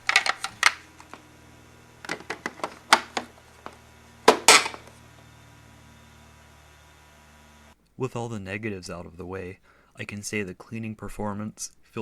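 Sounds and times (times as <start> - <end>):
plastic filter cover clicking: 0.0 - 1.2, 2.1 - 3.3.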